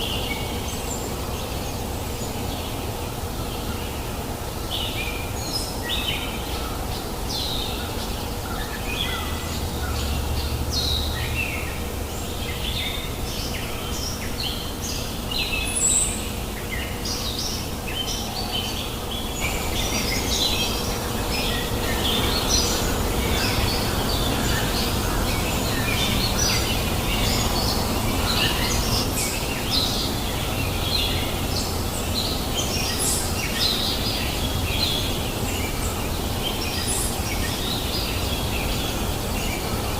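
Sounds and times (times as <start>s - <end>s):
birds chirping: 0.0s - 39.9s
river flowing: 19.0s - 39.9s.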